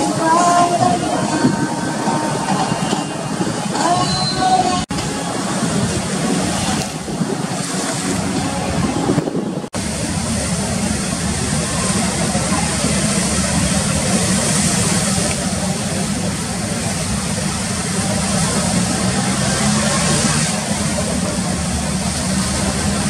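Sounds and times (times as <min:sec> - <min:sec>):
rough sea waves: 0:00.0 - 0:23.0
wind buffeting microphone: 0:04.6 - 0:11.0.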